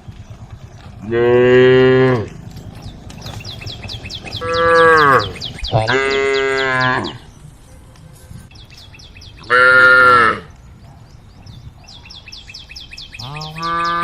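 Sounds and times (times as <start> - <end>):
cows mooing: 1.0 - 7.3, 9.4 - 10.5, 13.2 - 14.0.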